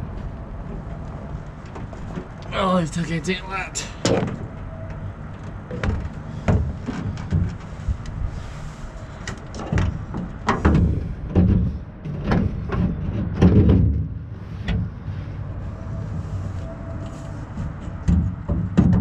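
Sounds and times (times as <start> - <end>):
metal tailgate clunks and knocks: 9.6 - 14.2, 18.1 - 19.0.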